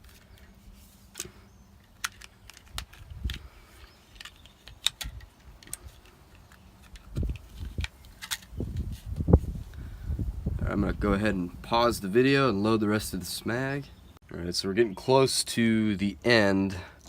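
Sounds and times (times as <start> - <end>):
cartridges clicking into magazine: 4.1 - 8.6.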